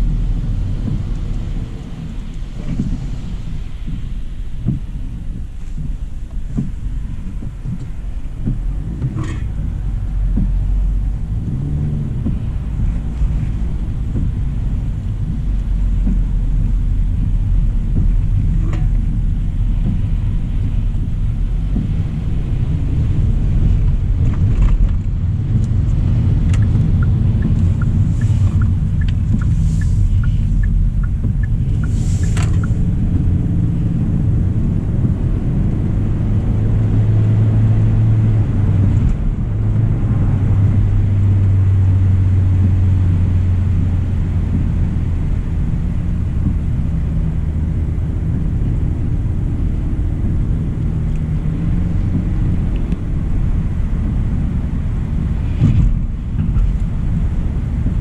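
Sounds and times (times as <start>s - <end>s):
tyres and engine rumble: 0.0s - 58.0s
light ticks: 0.3s - 35.8s, 51.9s - 53.1s.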